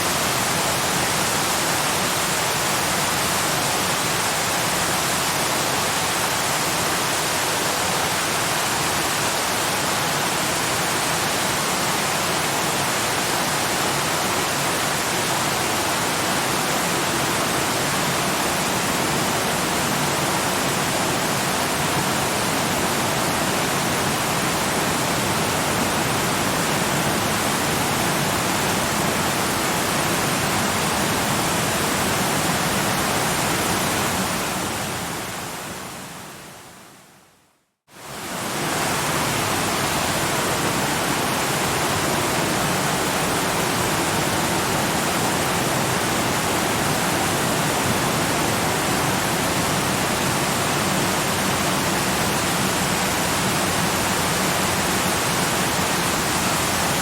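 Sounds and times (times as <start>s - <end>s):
waterfall rushing: 0.0s - 36.4s, 38.0s - 57.0s.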